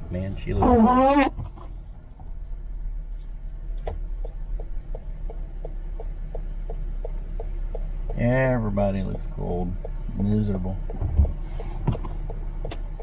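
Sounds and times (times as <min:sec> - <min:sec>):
low rumble of car driving: 0:00.0 - 0:13.0
car turn signal ticking: 0:03.7 - 0:13.0.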